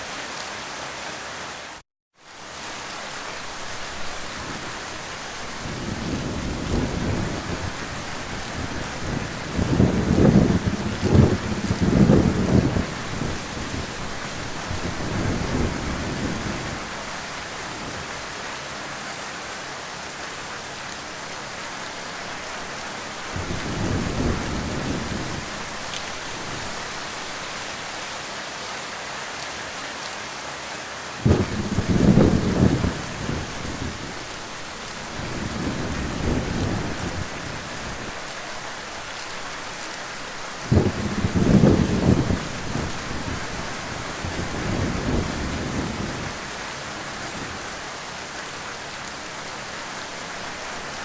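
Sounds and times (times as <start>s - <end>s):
heavy rain falling: 0.0s - 51.0s
thunder rolling: 5.6s - 16.9s, 23.3s - 25.5s, 31.2s - 34.3s, 35.0s - 38.2s, 40.7s - 46.4s.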